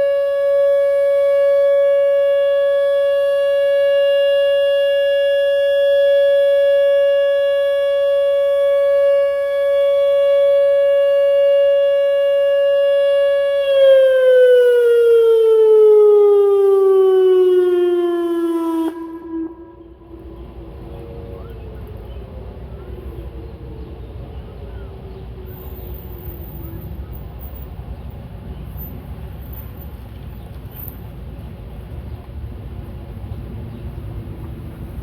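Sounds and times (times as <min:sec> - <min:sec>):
electronic warning siren: 0:00.0 - 0:21.6.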